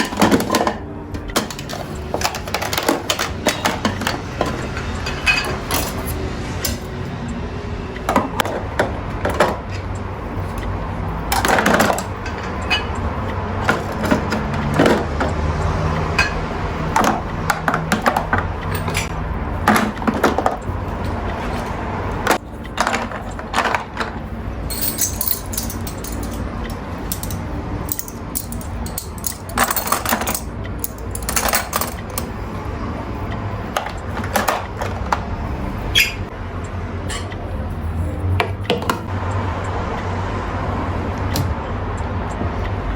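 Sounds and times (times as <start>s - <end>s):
household items clinking and knocking: 0.0s - 7.0s, 8.1s - 10.7s, 11.3s - 13.0s, 13.6s - 32.4s, 33.7s - 35.3s.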